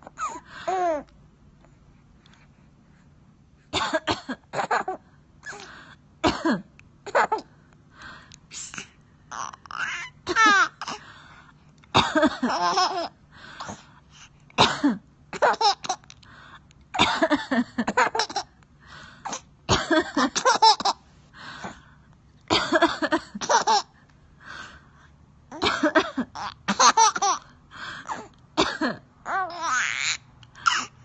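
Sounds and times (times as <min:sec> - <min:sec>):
woman coughing: 0:03.8 - 0:04.9, 0:06.2 - 0:07.3, 0:12.0 - 0:12.6, 0:14.6 - 0:15.0, 0:17.0 - 0:18.2, 0:19.3 - 0:21.0, 0:22.5 - 0:23.6, 0:25.6 - 0:27.3, 0:28.1 - 0:29.0
baby laughing: 0:09.3 - 0:10.9, 0:12.2 - 0:13.2, 0:15.4 - 0:16.1, 0:17.9 - 0:18.6, 0:20.2 - 0:21.0, 0:23.4 - 0:23.9, 0:26.2 - 0:27.5, 0:29.3 - 0:30.9.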